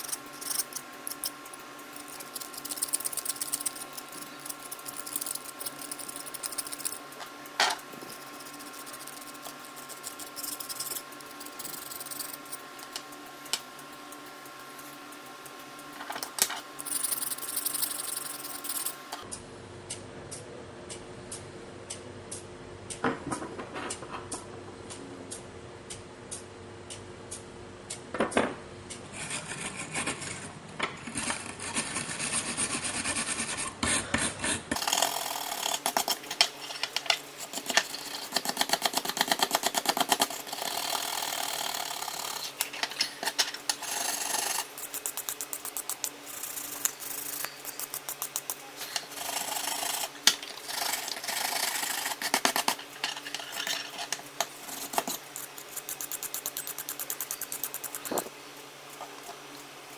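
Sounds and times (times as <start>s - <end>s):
abrasive scraping on metal scissors: 0.0s - 19.2s, 34.8s - 59.4s.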